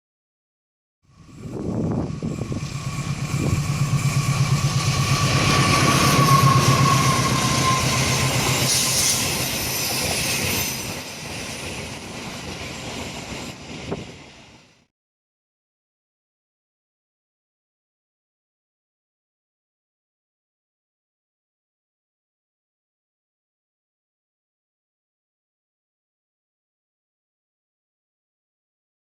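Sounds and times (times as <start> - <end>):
train passing: 1.1 - 14.9.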